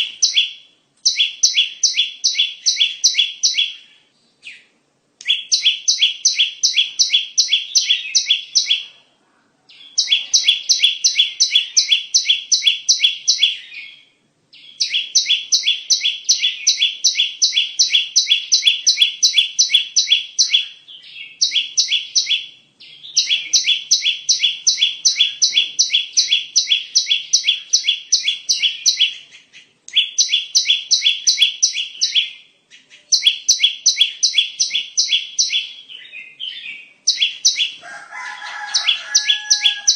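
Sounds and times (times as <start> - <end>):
bird song of sharp high notes: 0.0 - 9.1, 9.7 - 39.9.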